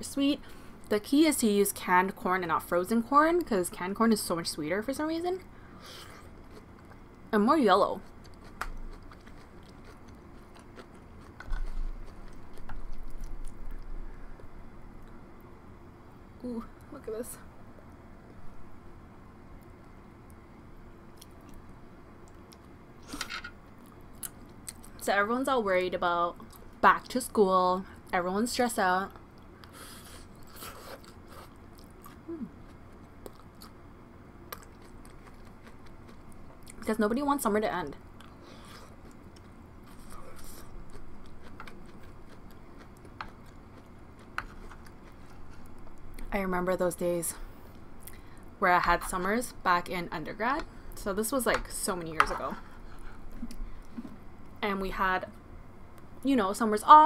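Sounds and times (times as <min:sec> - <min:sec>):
chewing with wet clicks: 0:08.2 - 0:13.9, 0:21.2 - 0:21.6, 0:22.2 - 0:22.7, 0:23.8 - 0:25.0, 0:26.4 - 0:26.7, 0:30.4 - 0:33.8, 0:34.5 - 0:36.8, 0:38.2 - 0:40.2, 0:40.8 - 0:46.3.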